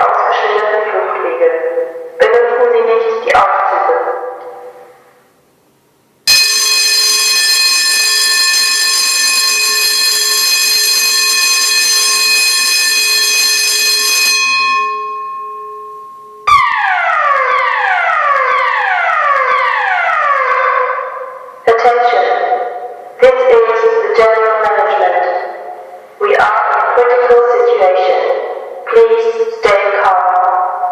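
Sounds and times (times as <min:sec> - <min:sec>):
loud steady alarm tone: 0:06.2 - 0:24.7
falling alarm tone: 0:06.3 - 0:21.6.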